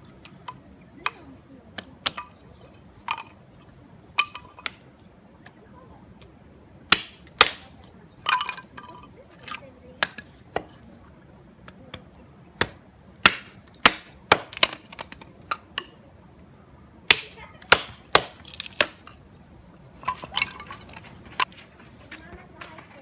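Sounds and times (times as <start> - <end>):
hard objects clinking and knocking: 8.2 - 9.6, 20.0 - 21.6.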